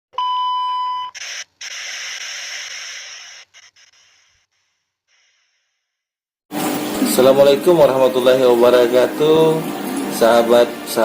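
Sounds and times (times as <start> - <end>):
electronic beep: 0.2 - 4.4
hissing whoosh: 1.2 - 5.8.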